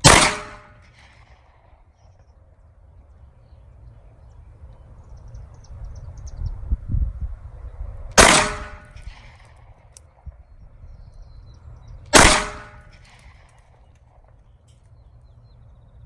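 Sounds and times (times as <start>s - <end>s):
pistol shots: 0.0s - 1.8s, 8.2s - 9.7s, 12.1s - 14.2s.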